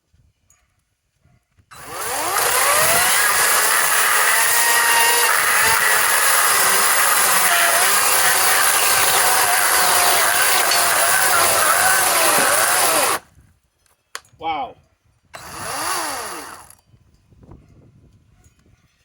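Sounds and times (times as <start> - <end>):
electric chainsaw cutting wood: 1.7 - 13.3, 15.4 - 16.8.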